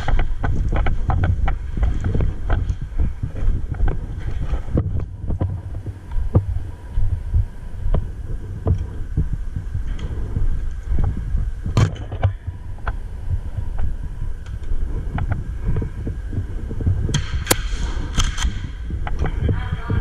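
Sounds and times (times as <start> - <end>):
low thumping rumble: 0.0 - 20.0
loud crack: 17.1 - 18.8
sharp clicks: 17.1 - 19.3.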